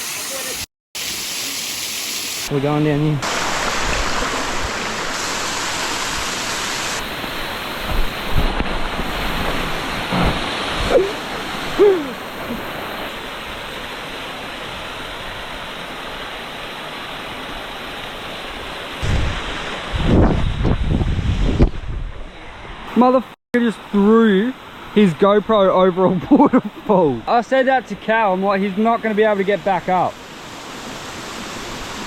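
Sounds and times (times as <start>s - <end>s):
waterfall rushing: 1.5s - 20.1s.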